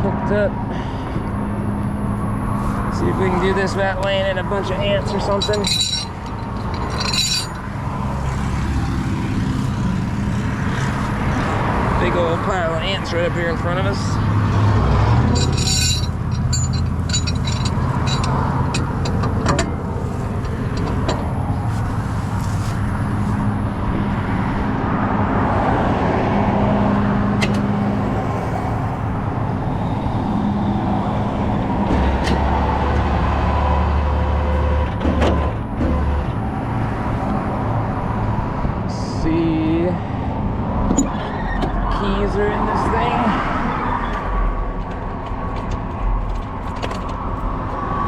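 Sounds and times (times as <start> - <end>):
road traffic: 0.0 - 48.0
vehicle engine running: 0.9 - 24.8
sharp clicks and knocks: 15.4 - 21.7.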